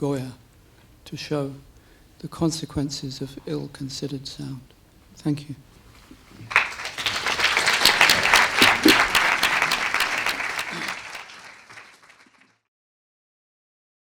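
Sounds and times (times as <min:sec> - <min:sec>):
audience applauding: 0:06.4 - 0:12.6.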